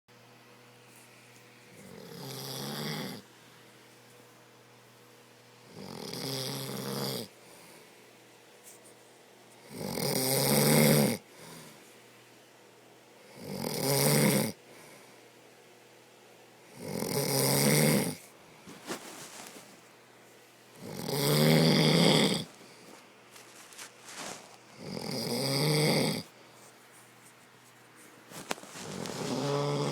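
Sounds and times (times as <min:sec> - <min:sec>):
man snoring heavily: 0:01.8 - 0:03.2, 0:05.7 - 0:07.3, 0:09.6 - 0:11.7, 0:13.3 - 0:14.6, 0:16.7 - 0:18.2, 0:20.8 - 0:22.6, 0:24.8 - 0:26.3, 0:28.9 - 0:29.9.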